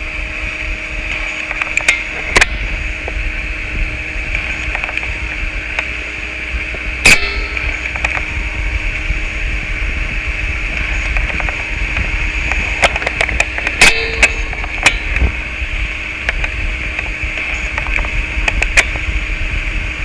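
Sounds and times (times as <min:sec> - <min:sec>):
hissing drone: 0:00.0 - 0:20.0
low hum: 0:00.0 - 0:20.0
sharp clicks and crackles: 0:01.0 - 0:03.2, 0:04.2 - 0:06.0, 0:06.7 - 0:08.4, 0:10.6 - 0:19.2.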